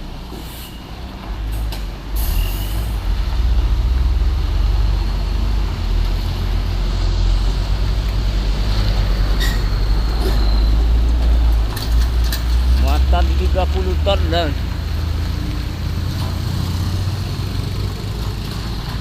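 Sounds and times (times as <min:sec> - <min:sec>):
diesel truck engine rumbling: 0:00.0 - 0:19.0
passing traffic: 0:00.0 - 0:19.0.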